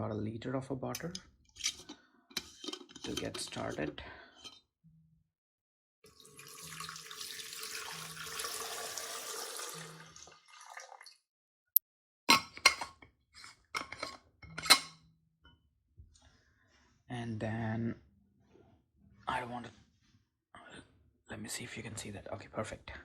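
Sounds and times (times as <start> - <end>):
water pouring into tank: 6.1 - 11.2.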